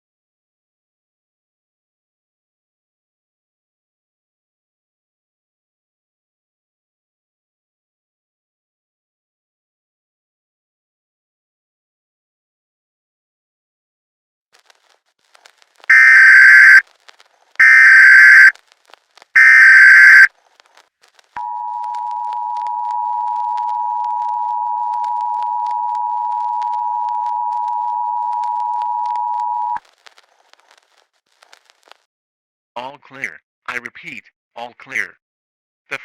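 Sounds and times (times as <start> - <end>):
buzzy data bursts: 15.9 - 16.8, 17.6 - 18.5, 19.4 - 20.3
two-tone attention signal: 15.9 - 16.8, 17.6 - 18.5, 19.4 - 20.3.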